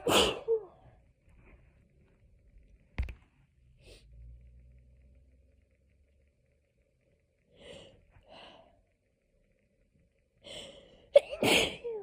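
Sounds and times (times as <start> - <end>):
person sneezing: 0.0 - 0.6, 11.2 - 12.0
person breathing: 7.5 - 9.0, 10.4 - 11.2.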